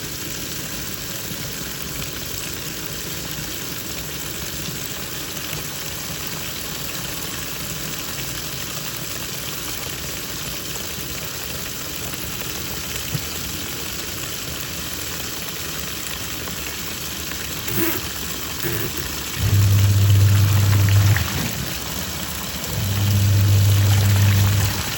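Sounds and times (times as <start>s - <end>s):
washing machine churning: 17.6s - 24.9s.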